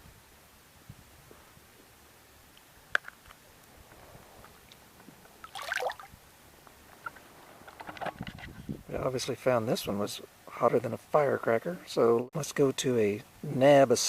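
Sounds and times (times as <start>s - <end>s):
water splash: 5.4s - 6.2s.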